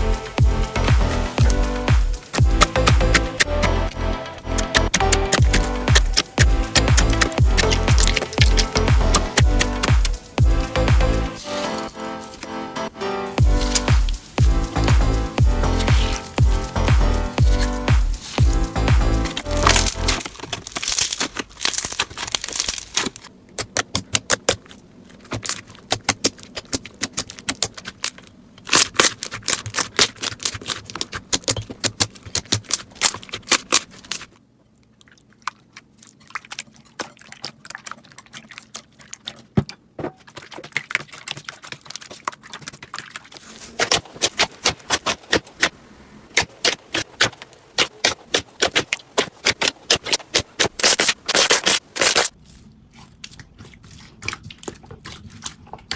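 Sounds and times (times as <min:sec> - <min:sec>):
slime crackling clicks and pops: 0:04.6 - 0:10.2, 0:19.2 - 0:24.6.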